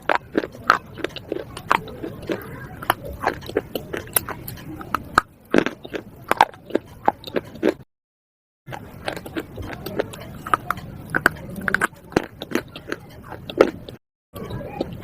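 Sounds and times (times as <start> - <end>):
person chewing crunchy pieces: 0.0 - 7.9, 8.7 - 15.0.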